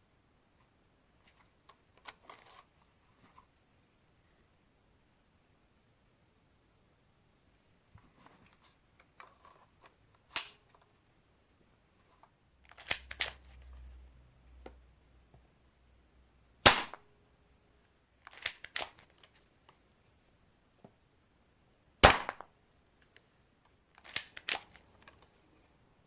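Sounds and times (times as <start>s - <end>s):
pistol handling clicks: 12.7s - 13.4s, 18.3s - 19.0s, 24.0s - 24.7s
airsoft pistol snaps: 16.6s - 17.0s, 22.0s - 22.5s.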